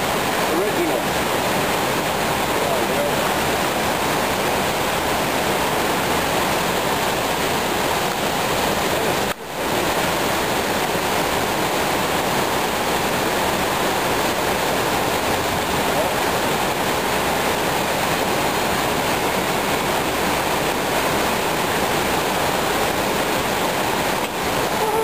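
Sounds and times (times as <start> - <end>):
steady rushing noise: 0.0 - 25.0.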